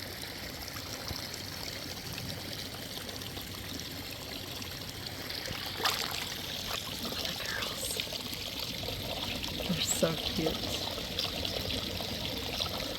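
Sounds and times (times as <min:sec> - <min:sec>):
water running and pouring: 0:00.0 - 0:12.9.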